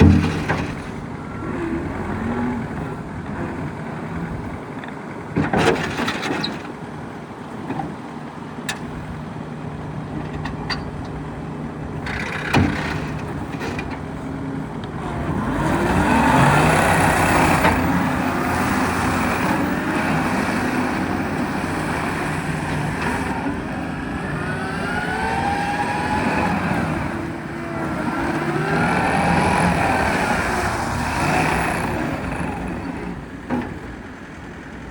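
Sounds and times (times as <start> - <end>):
sharp knocks: 0.0 - 1.0
skid steer diesel engine: 0.0 - 34.9.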